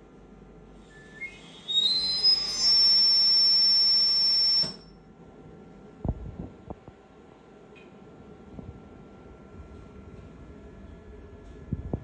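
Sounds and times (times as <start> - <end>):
ventilator alarm beeps and tone: 2.0 - 5.0.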